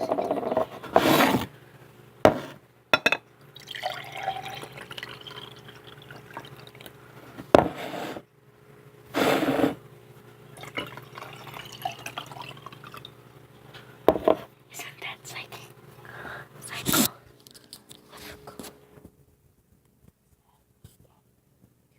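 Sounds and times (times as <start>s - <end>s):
water pouring into glasses: 3.5s - 7.0s, 10.6s - 13.2s.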